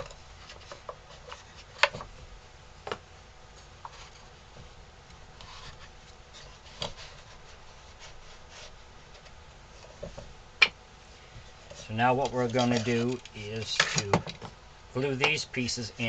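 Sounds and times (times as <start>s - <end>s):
faint wood rubbing: 0.0s - 10.4s.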